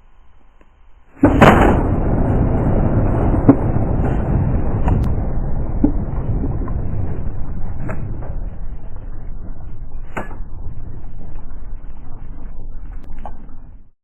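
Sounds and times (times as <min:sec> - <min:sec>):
long steady rumble: 0:00.0 - 0:14.0
shotgun blast: 0:01.2 - 0:03.4.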